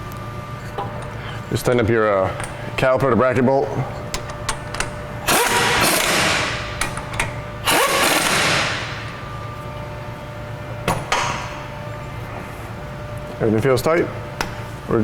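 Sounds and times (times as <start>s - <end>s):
power wrench running: 4.1s - 9.2s.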